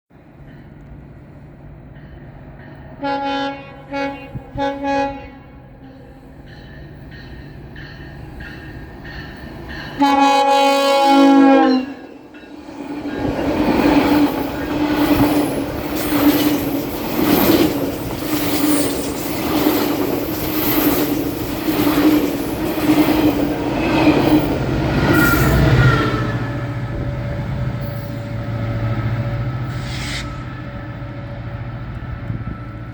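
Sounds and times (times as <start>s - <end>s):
train wheels clacking over rail joints: 13.0s - 25.7s.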